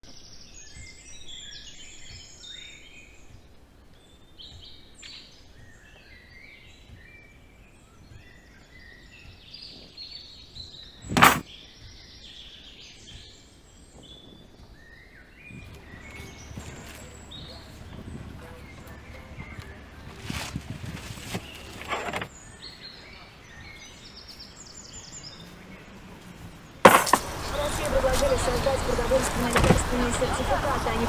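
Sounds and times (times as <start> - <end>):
birds chirping and singing: 0.1 - 31.0
loud sharp knock: 11.1 - 11.4, 26.9 - 27.3.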